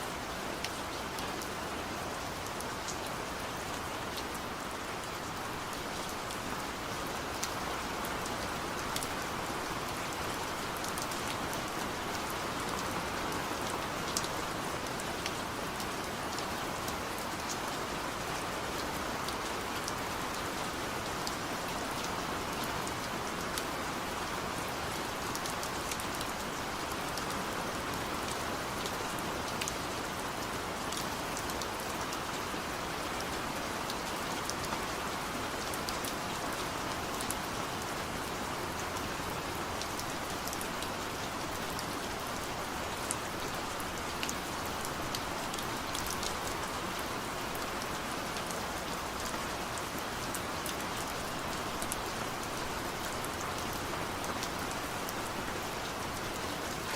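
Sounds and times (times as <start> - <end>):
steady rain: 0.0 - 56.9
raindrops ticking on a surface: 0.5 - 56.9.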